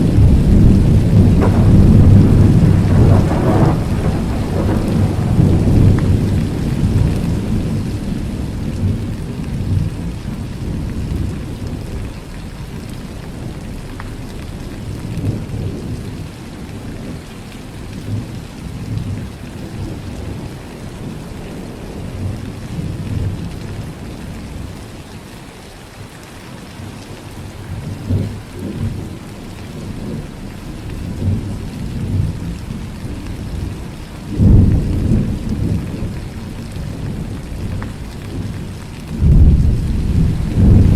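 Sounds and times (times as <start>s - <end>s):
loud thunderclap: 0.0s - 9.0s, 34.3s - 40.9s
thunder rumbling: 0.0s - 12.1s, 28.0s - 40.9s
rain falling: 0.0s - 40.9s.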